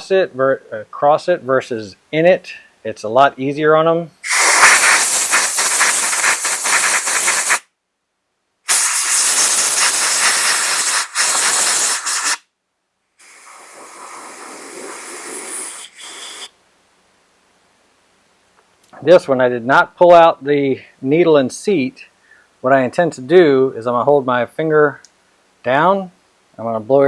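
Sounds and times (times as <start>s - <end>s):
compressed air blow gun hissing: 4.2s - 7.6s, 8.7s - 12.4s, 13.2s - 16.6s.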